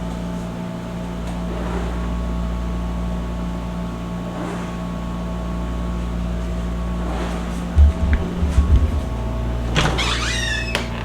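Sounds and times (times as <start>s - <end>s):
low mechanical hum: 0.0s - 11.0s
low bump: 6.8s - 11.0s.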